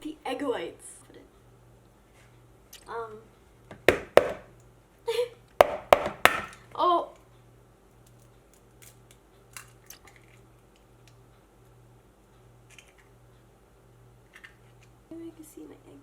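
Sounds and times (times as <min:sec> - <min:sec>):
low steady hum: 0:00.0 - 0:16.0
eggshell tapping a bowl: 0:03.8 - 0:04.5, 0:05.6 - 0:06.5.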